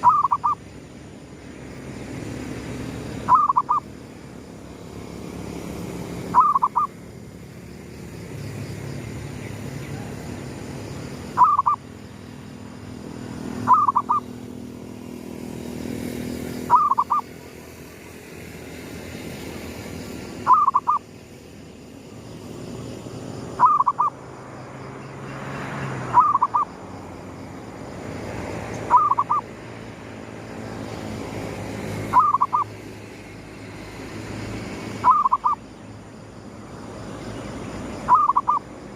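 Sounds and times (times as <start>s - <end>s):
dove cooing: 0.0s - 0.6s, 3.3s - 3.9s, 6.3s - 6.9s, 11.4s - 11.8s, 13.6s - 14.3s, 16.7s - 17.3s, 20.5s - 21.0s, 23.6s - 24.2s, 28.9s - 29.4s, 32.1s - 32.7s, 35.0s - 35.6s, 38.1s - 38.6s.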